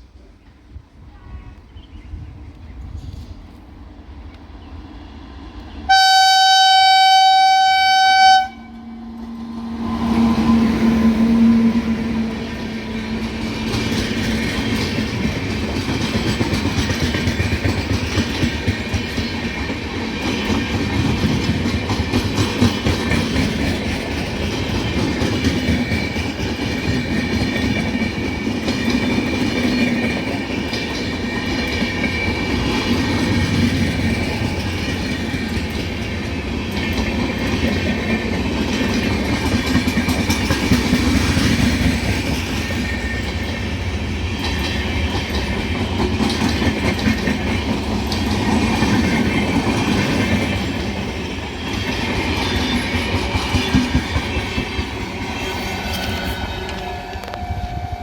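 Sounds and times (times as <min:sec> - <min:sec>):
train rumble: 0:00.0 - 0:58.0
train horn blast: 0:05.9 - 0:12.7, 0:55.8 - 0:58.0
wheels clattering on rails: 0:09.2 - 0:57.4.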